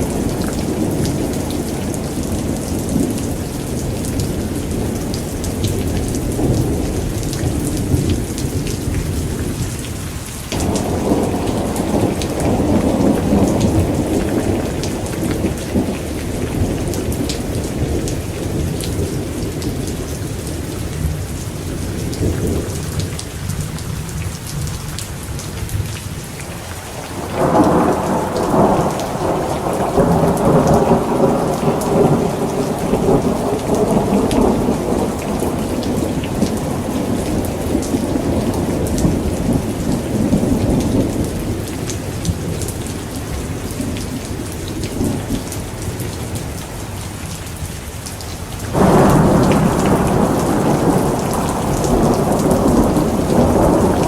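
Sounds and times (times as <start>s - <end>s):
steady rain: 0.0s - 54.0s
thunder rumbling: 10.6s - 23.2s, 26.8s - 45.6s, 48.7s - 54.0s.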